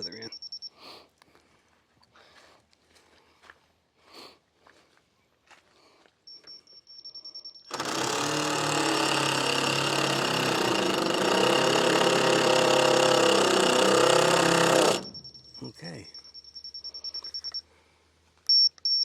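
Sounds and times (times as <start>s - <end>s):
power drill driving screw: 7.7s - 15.5s.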